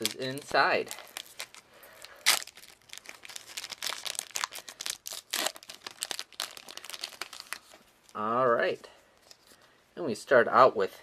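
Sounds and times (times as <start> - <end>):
wrapper tearing and crinkling: 0.0 - 8.2.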